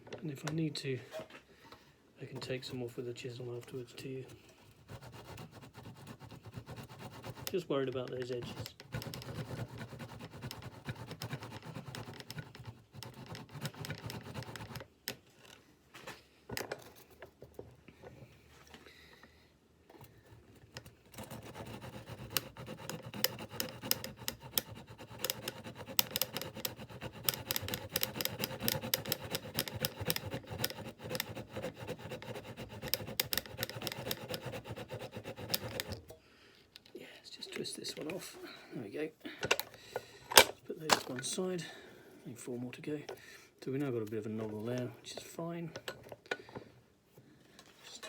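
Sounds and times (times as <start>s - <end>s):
hand saw cutting wood: 4.8s - 14.8s, 21.1s - 36.0s
saw scraping: 4.8s - 14.8s, 21.1s - 36.0s.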